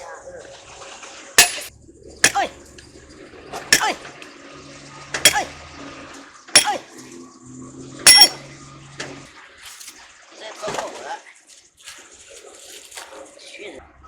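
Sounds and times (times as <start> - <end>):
hammer blows on metal: 5.3 - 5.5, 6.6 - 6.8, 8.1 - 8.4.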